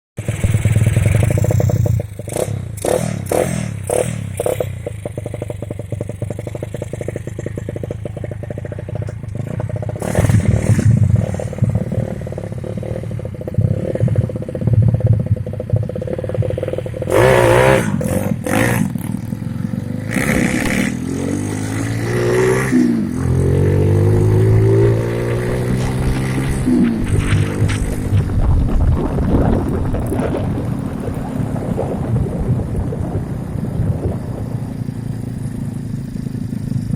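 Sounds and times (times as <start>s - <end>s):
motorcycle engine running: 0.2s - 36.9s.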